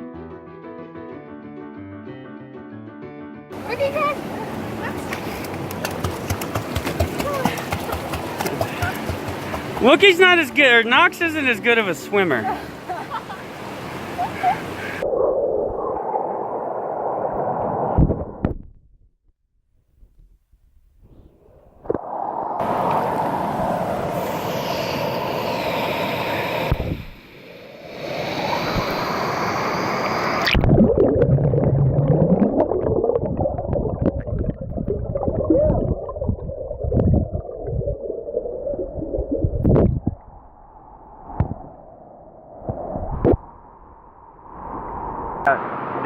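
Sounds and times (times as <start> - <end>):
water gurgling and splashing: 3.6 - 10.8, 28.0 - 40.5.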